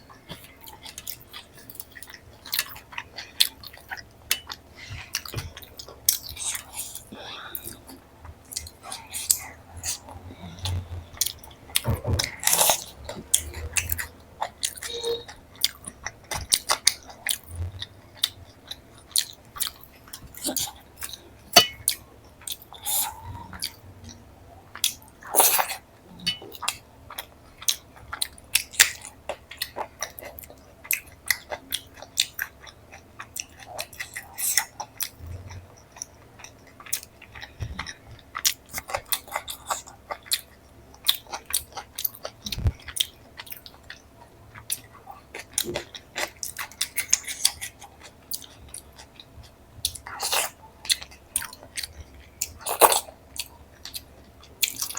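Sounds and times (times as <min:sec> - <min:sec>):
person chewing food: 0:00.1 - 0:54.9.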